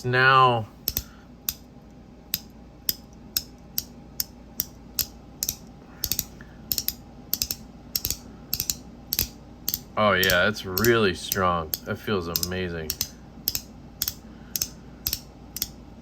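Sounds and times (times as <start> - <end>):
magnetic toy snapping clicks: 0.8 - 1.7, 2.3 - 15.8.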